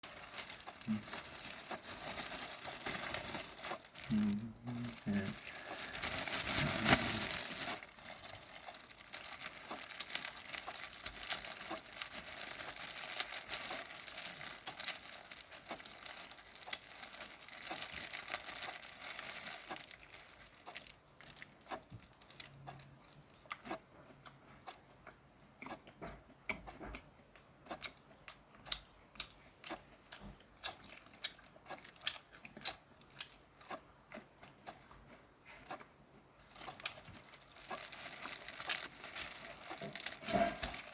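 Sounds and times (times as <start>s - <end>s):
shrimp shells crackling: 0.0s - 23.4s, 36.4s - 40.9s
chewing: 0.0s - 40.9s.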